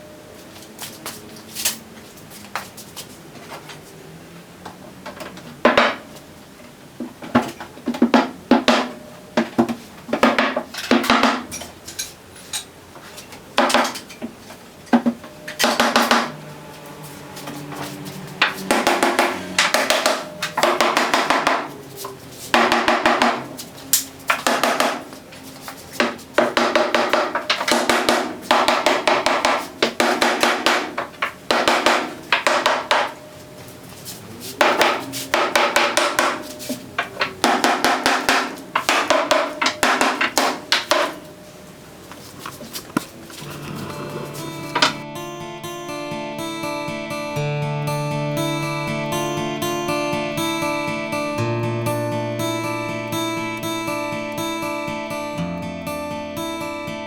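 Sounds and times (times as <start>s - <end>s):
hammer knocking wooden joints: 5.6s - 6.1s, 7.1s - 11.6s, 15.0s - 16.4s, 18.4s - 21.8s, 22.5s - 23.6s, 24.3s - 25.2s, 25.9s - 33.2s, 34.6s - 41.2s, 43.4s - 45.0s.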